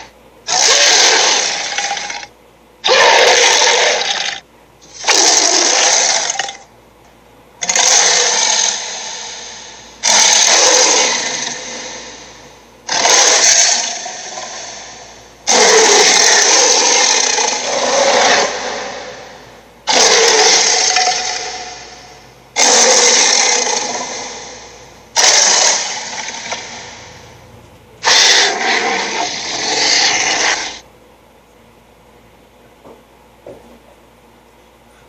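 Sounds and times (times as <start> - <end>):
dinosaur roar: 0.0 - 6.6, 7.6 - 27.0, 28.0 - 30.8.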